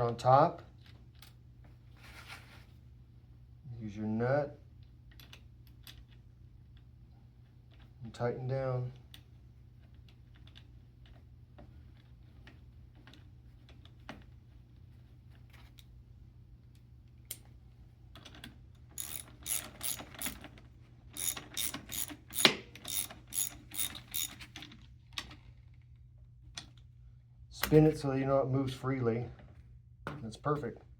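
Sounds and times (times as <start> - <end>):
ratchet wrench clicking: 19.0 - 20.4, 21.2 - 24.4.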